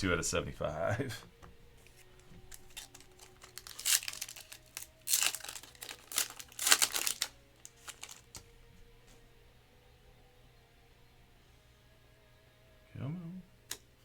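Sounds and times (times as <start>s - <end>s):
wrapper tearing and crinkling: 2.5s - 8.5s.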